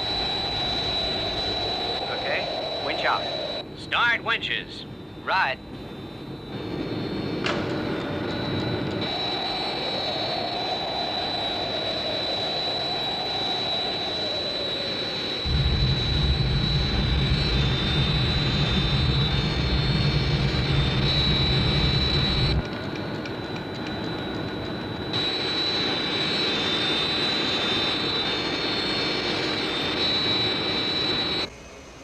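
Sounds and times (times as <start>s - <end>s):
jet engines droning: 0.0s - 32.0s
thin high whine: 0.0s - 32.0s
low rumble: 15.5s - 22.7s.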